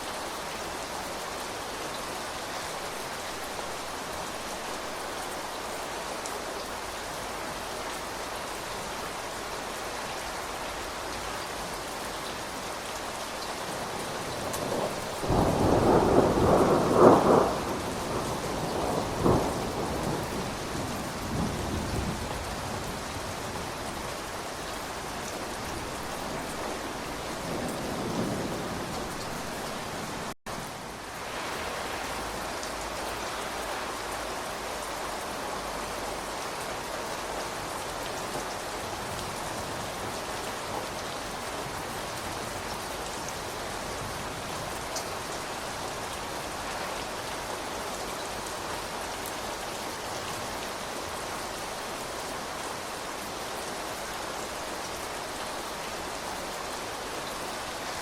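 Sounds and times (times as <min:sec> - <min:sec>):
steady rain: 0:00.0 - 0:58.0
thunder rumbling: 0:14.2 - 0:23.5.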